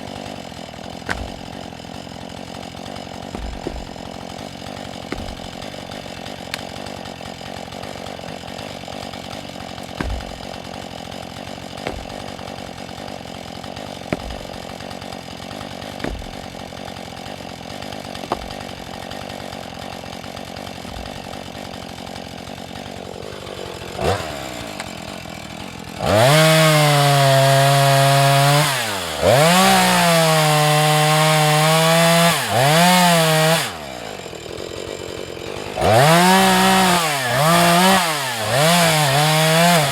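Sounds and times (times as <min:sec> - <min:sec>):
chainsaw cutting into wood: 0:00.0 - 0:39.9
chainsaw idling: 0:00.0 - 0:39.9
chainsaw clicks: 0:00.1 - 0:22.6.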